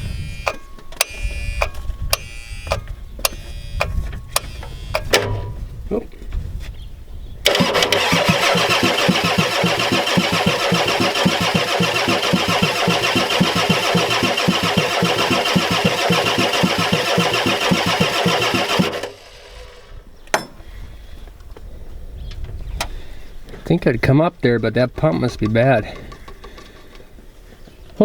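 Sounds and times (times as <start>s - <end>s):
diesel engine starter cranking: 7.4s - 20.2s.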